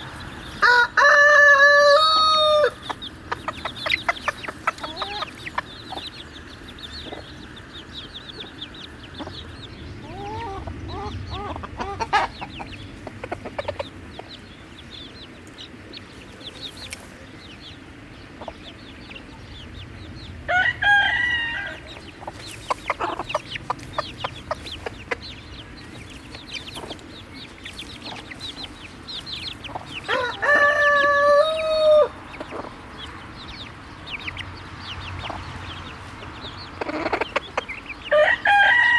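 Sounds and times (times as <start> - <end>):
chickens clucking: 0.0 - 38.9
rooster crowing: 0.6 - 2.8, 20.5 - 21.9, 30.0 - 32.2, 38.1 - 38.9.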